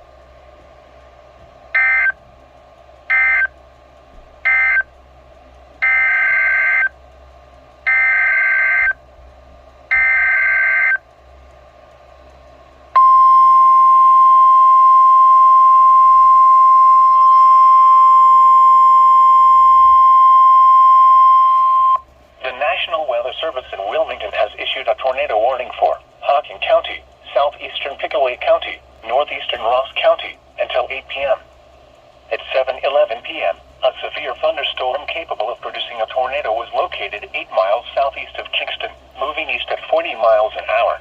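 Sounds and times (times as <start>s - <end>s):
single-tone alert alarm: 1.8s - 2.2s, 3.1s - 3.5s, 4.5s - 4.8s, 5.8s - 6.9s, 7.9s - 9.0s, 9.9s - 11.0s, 13.0s - 22.0s.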